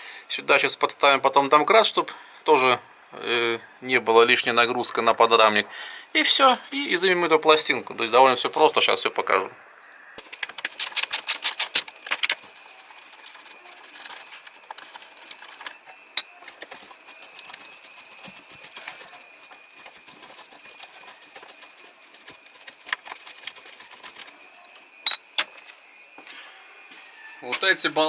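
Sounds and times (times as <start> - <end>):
ratchet wrench clicking: 10.7 - 12.3
sharp ticks: 10.8 - 11.9.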